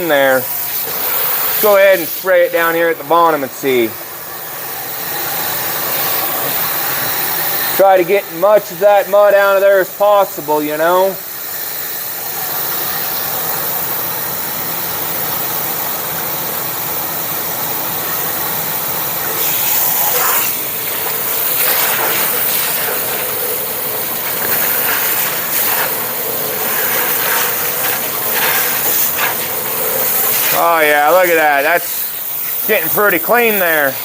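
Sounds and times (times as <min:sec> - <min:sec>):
hose water spraying on metal: 0:00.0 - 0:13.8, 0:19.0 - 0:34.0.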